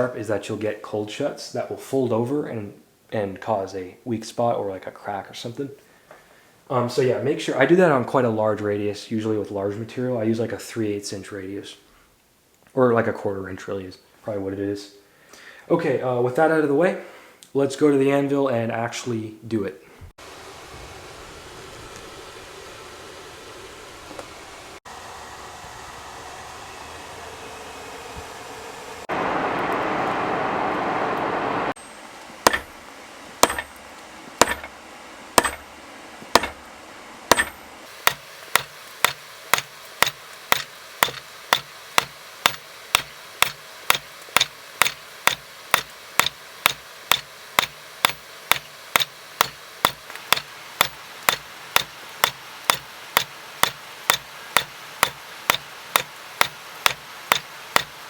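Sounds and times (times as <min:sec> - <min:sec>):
loud rushing noise: 0:24.9 - 0:31.8
hammer striking steel on anvil: 0:32.4 - 0:32.8, 0:33.4 - 0:33.8, 0:34.4 - 0:34.7, 0:35.4 - 0:35.7, 0:36.3 - 0:36.6, 0:37.3 - 0:58.0.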